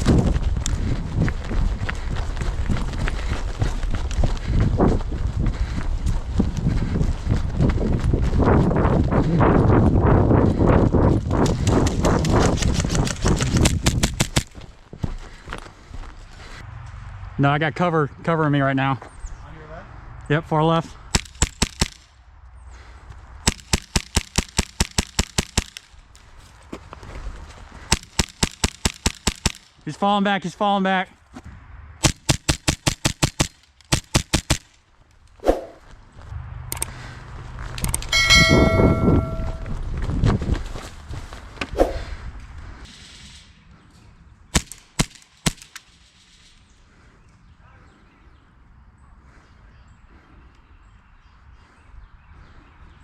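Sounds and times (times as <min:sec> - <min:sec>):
airsoft pistols firing: 0:21.1 - 0:22.0, 0:23.4 - 0:25.9, 0:27.9 - 0:29.7, 0:32.0 - 0:34.8, 0:44.5 - 0:46.4.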